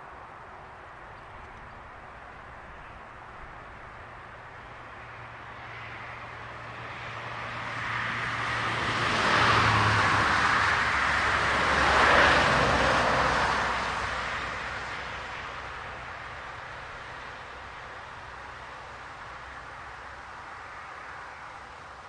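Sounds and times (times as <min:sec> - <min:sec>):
cars passing on asphalt: 0:00.0 - 0:22.0.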